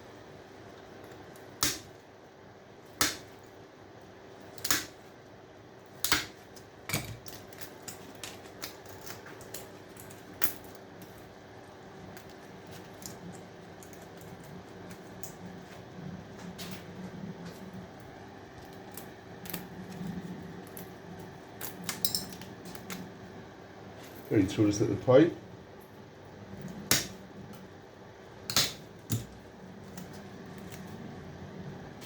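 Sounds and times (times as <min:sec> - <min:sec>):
faint steady hum: 0:00.0 - 0:32.0
hand cutters snapping: 0:06.0 - 0:09.6, 0:28.5 - 0:29.3.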